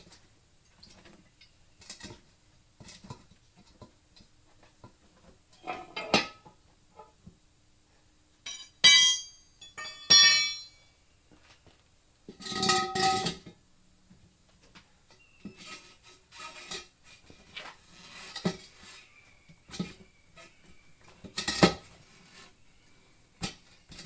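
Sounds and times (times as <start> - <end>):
small knocks and scrapes: 0.0 - 7.4, 11.3 - 24.0
metal tools clanking on wheel rim: 5.5 - 7.1, 8.4 - 10.9, 12.4 - 13.5.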